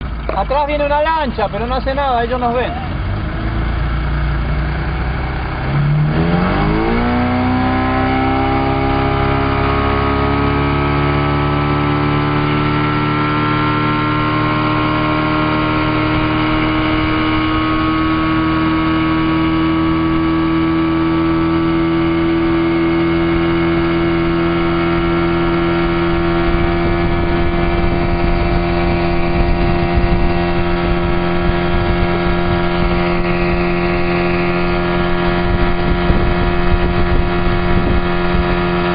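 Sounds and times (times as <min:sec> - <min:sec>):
motorboat engine: 0:00.0 - 0:38.9.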